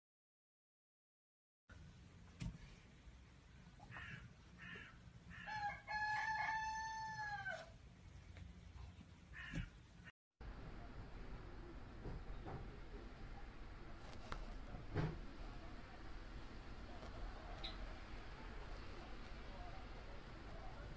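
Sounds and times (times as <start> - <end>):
rooster crowing: 4.6 - 7.8.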